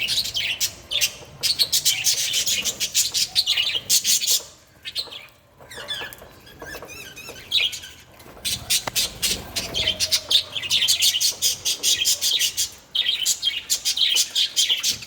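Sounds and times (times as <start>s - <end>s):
budgies chirping: 0.0s - 15.0s.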